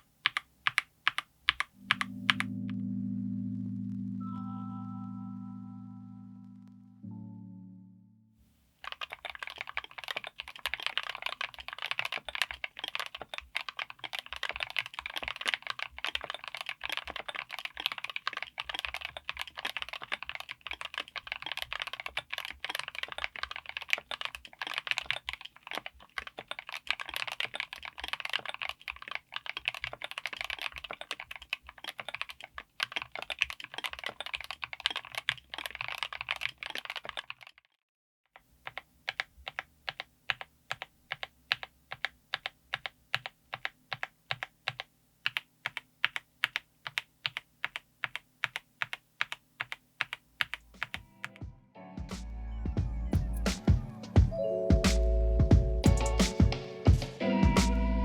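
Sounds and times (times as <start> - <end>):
fast typing on mechanical keyboard: 0.0 - 2.5, 8.8 - 37.8, 38.4 - 51.4.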